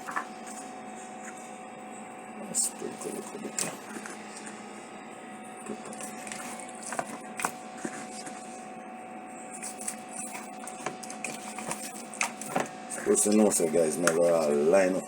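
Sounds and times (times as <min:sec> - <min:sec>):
steady mechanical hum: 0:00.0 - 0:15.0.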